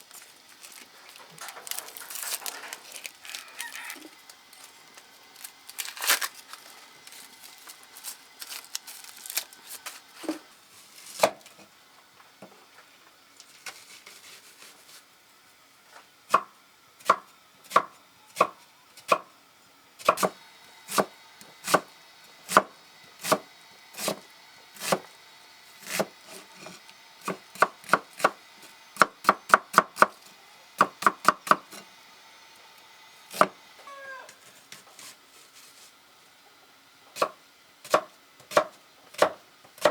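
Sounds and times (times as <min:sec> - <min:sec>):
knife chopping on wooden board: 0:16.3 - 0:19.3, 0:20.0 - 0:21.9, 0:22.5 - 0:24.2, 0:24.8 - 0:25.1, 0:25.8 - 0:28.4, 0:29.0 - 0:30.2, 0:30.8 - 0:31.8, 0:37.2 - 0:39.9.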